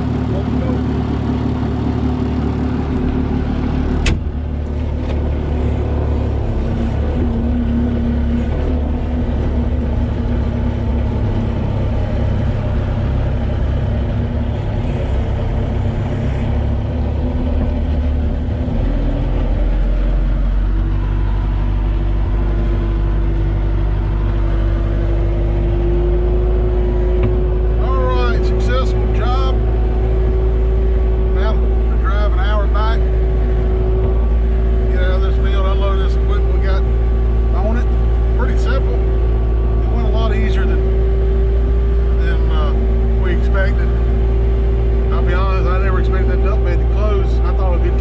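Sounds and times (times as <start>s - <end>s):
vehicle engine running: 0.0s - 48.0s.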